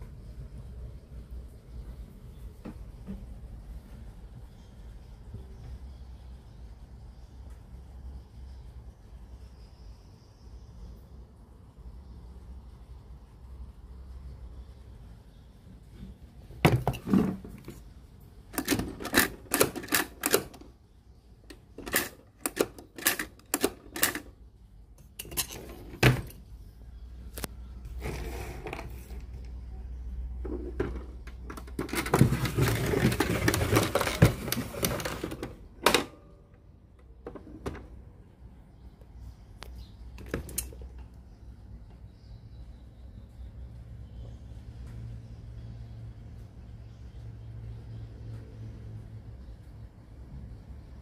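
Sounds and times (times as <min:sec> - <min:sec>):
clatter and rustling: 0:16.0 - 0:17.9, 0:30.4 - 0:36.0.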